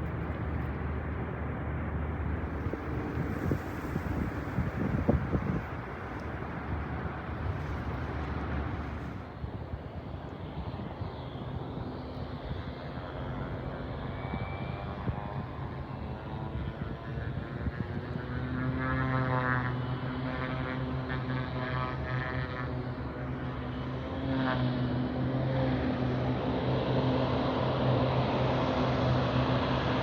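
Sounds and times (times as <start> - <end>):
rushing wind-like noise: 0.0 - 20.7
propeller airplane engine drone: 0.0 - 30.0.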